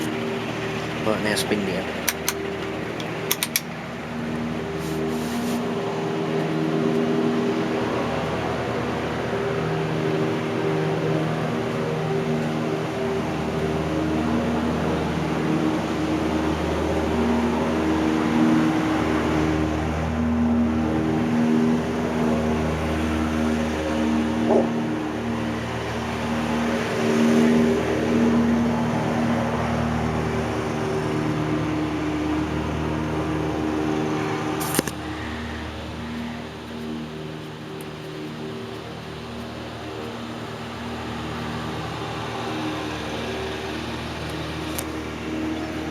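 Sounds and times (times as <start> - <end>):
ceiling fan spinning: 0.0 - 45.9
fan clicks: 1.3 - 3.8, 34.6 - 35.0.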